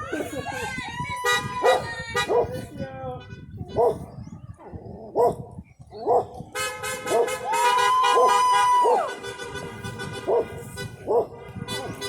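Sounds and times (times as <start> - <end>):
dog barking: 1.6 - 2.6, 3.7 - 4.1, 5.1 - 6.4, 7.0 - 7.4, 10.3 - 11.4
car horn: 6.5 - 12.0.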